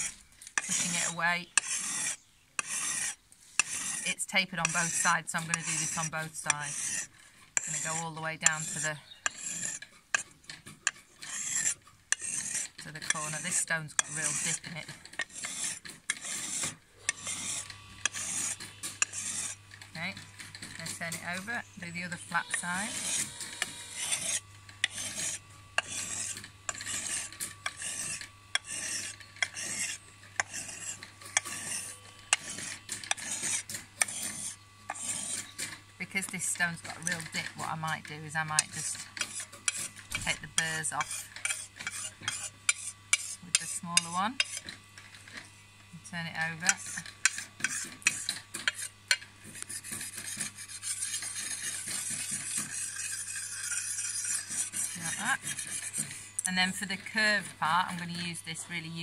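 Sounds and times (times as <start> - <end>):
blade rasping on sharpening stone: 0.0 - 45.4, 46.4 - 57.5.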